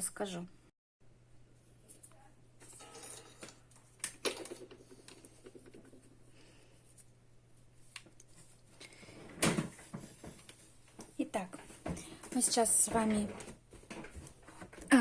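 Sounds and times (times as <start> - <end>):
faint rustling and scratching: 4.8 - 15.0.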